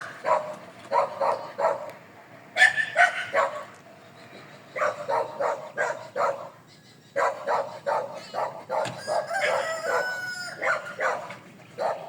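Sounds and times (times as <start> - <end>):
dog barking: 0.2 - 2.0, 2.6 - 3.7, 4.8 - 6.6, 7.2 - 12.0.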